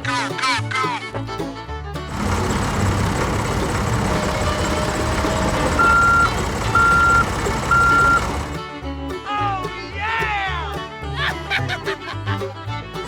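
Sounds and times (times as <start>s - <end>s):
heavy machine engine running: 2.1s - 8.7s
reversing alarm beeping: 2.2s - 8.6s.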